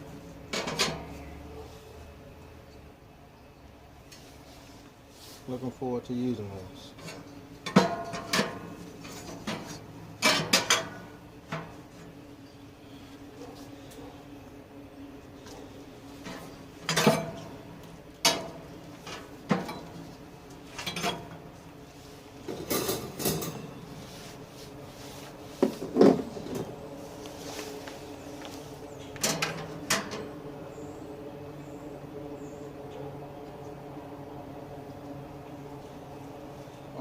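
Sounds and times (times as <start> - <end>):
steady low hum: 0.0 - 37.0
metal grill parts clunking: 0.5 - 1.2, 7.0 - 11.8, 16.2 - 17.6, 18.2 - 20.0, 20.7 - 21.4, 22.4 - 23.8, 29.2 - 30.3.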